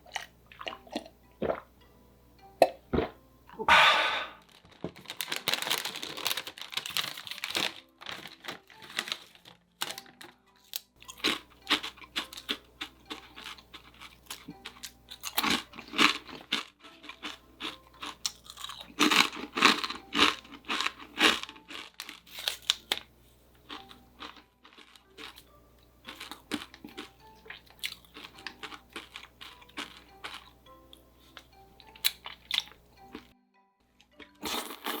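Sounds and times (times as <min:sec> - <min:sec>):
crunchy chewing of food: 0:00.0 - 0:01.6, 0:03.7 - 0:30.6, 0:31.2 - 0:33.3, 0:34.2 - 0:35.0
quiet background music: 0:00.0 - 0:35.0.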